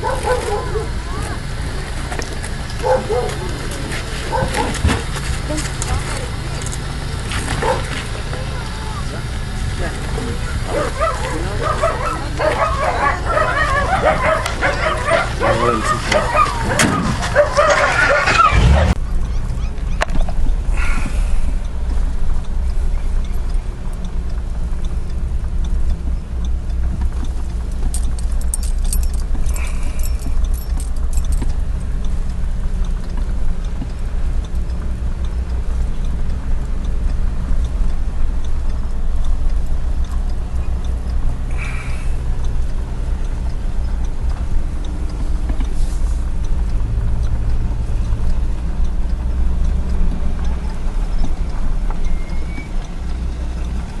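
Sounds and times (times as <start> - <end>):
vehicle rumble: 0.0 - 54.0.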